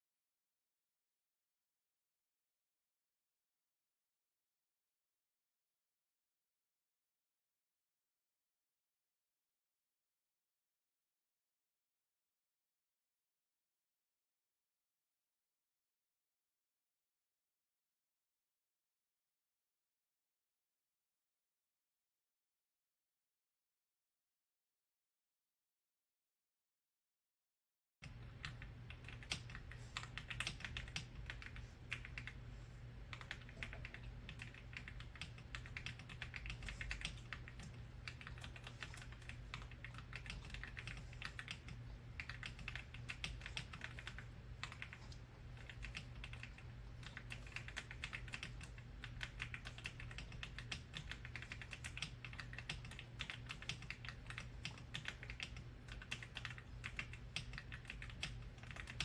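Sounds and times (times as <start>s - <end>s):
steady low hum: 28.0s - 59.0s
mechanical keyboard typing: 28.2s - 32.4s, 33.1s - 59.0s.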